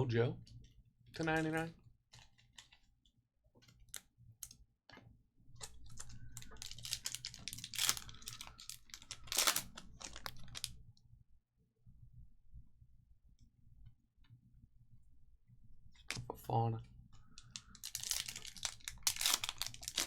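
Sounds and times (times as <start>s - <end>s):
cards clicking and rustling: 17.4s - 20.0s.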